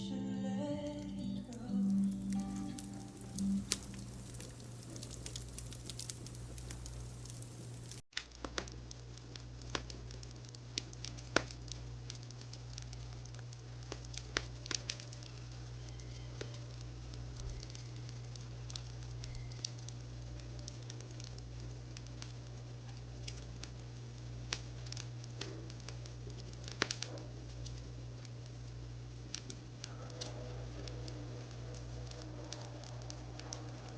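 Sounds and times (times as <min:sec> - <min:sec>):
low hum: 0:00.0 - 0:08.0
wood fire crackling: 0:00.0 - 0:33.9.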